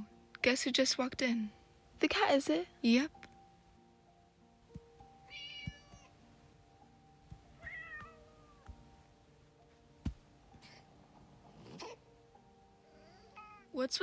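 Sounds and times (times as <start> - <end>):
cat meowing: 5.3 - 6.1, 7.6 - 8.6.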